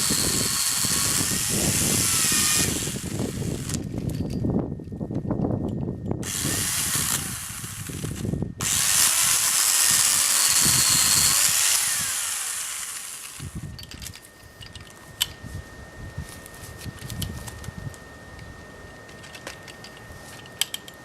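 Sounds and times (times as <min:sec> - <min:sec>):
pole chainsaw running: 0:00.0 - 0:04.1, 0:06.2 - 0:13.8.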